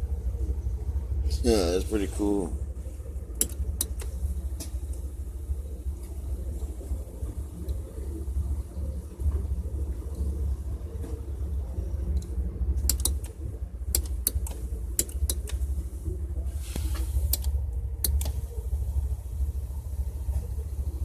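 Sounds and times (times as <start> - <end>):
car engine idling: 0.0 - 21.0
sharp clicks and taps: 12.1 - 15.6.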